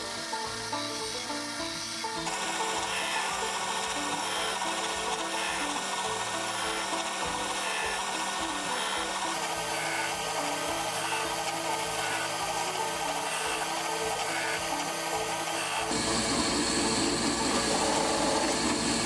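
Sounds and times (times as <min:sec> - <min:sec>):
background music picked melody: 0:00.0 - 0:15.9
power sander on wood: 0:00.0 - 0:19.0.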